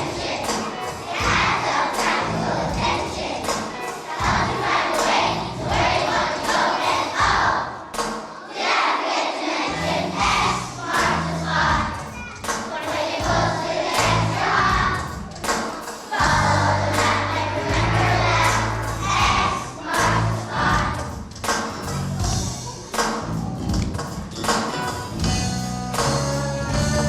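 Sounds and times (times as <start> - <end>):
children's choir singing: 0.0 - 22.3
instrumental accompaniment: 10.2 - 27.0.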